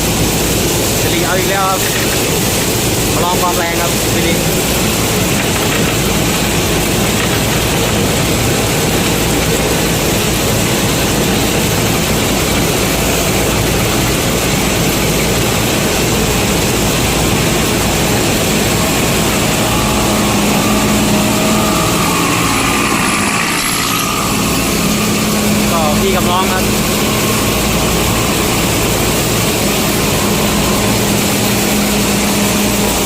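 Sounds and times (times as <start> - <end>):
diesel engine running hard: 0.0 - 33.0
threshing machinery: 0.0 - 33.0
higher steady tone: 16.7 - 33.0.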